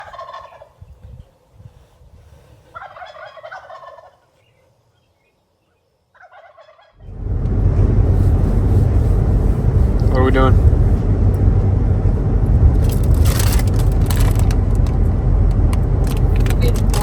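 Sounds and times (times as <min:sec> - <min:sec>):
turkey gobbling: 0:00.0 - 0:00.8, 0:02.7 - 0:04.3, 0:06.1 - 0:07.1
loud low rumble: 0:07.0 - 0:17.0.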